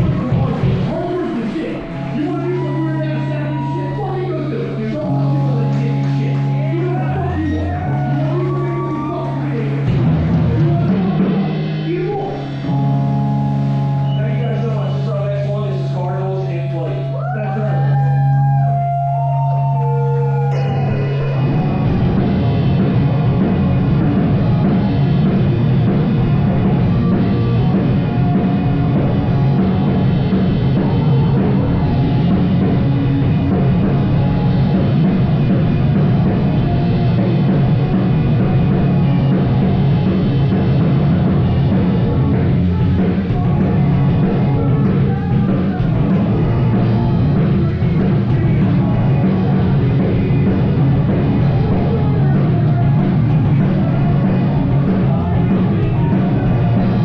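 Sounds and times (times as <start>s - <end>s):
live rock band playing: 0.0s - 57.0s.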